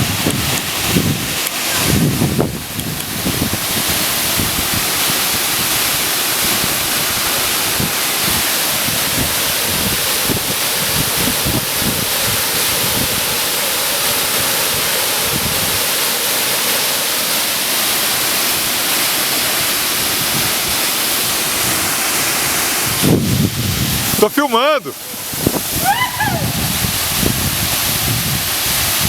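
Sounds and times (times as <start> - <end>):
wind buffeting microphone: 0.0 - 13.4, 19.9 - 24.3, 25.0 - 29.0
waterfall rushing: 0.0 - 29.0.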